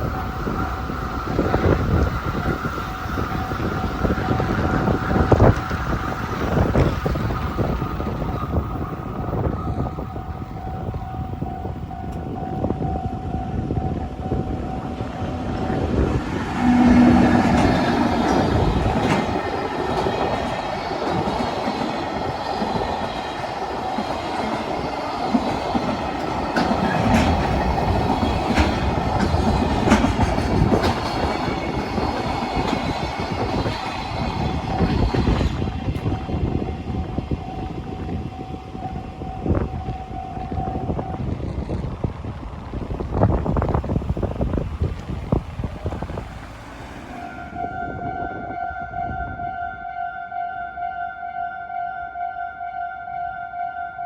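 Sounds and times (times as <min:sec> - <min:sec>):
crossing warning bell ringing: 0:00.0 - 0:41.4
train horn blast: 0:11.0 - 0:19.4, 0:47.2 - 0:54.0
wheels clicking over rail joints: 0:17.3 - 0:36.1.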